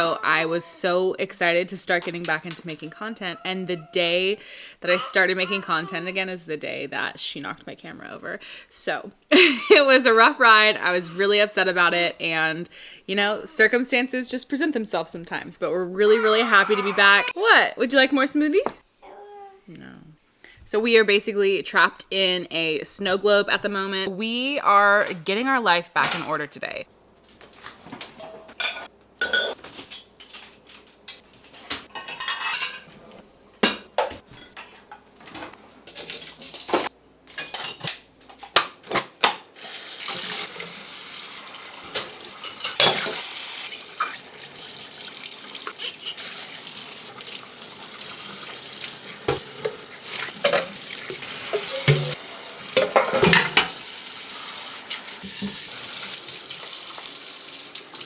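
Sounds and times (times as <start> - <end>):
dishes and cutlery clattering: 28.2 - 31.2, 31.8 - 33.0, 33.6 - 39.1, 41.9 - 43.2, 49.3 - 52.2, 52.8 - 53.8
tap water running: 39.6 - 58.0.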